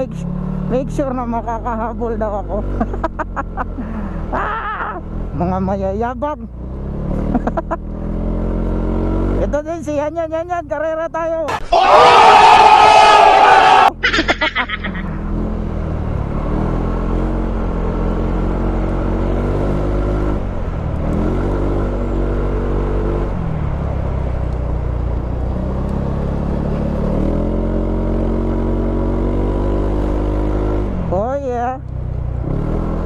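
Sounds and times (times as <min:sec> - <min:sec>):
person yelling: 0:11.5 - 0:14.1.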